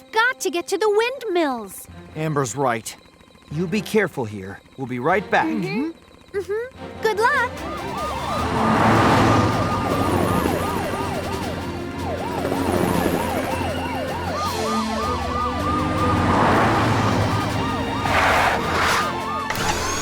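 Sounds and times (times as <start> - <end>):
steady high siren tone: 2.1 - 20.0
cartoon sirens wailing: 7.1 - 20.0.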